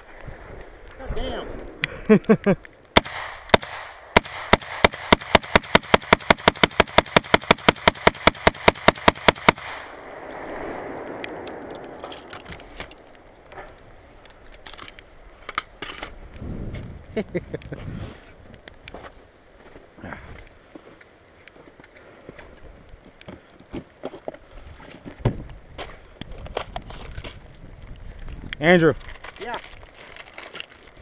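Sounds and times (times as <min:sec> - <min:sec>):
rapid gunfire: 0:03.0 - 0:09.9
soft rushing noise: 0:09.8 - 0:15.4.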